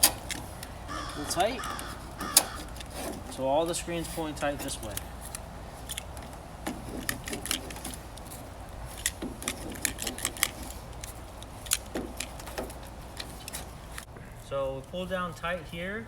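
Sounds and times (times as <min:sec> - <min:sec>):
light clicks and taps of mesh: 0:04.3 - 0:14.1.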